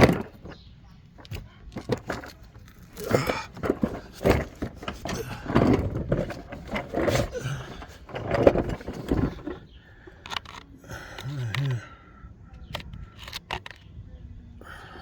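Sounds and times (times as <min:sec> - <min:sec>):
knocks under a car: 0:00.0 - 0:09.6
rustling and shuffling: 0:00.0 - 0:10.8.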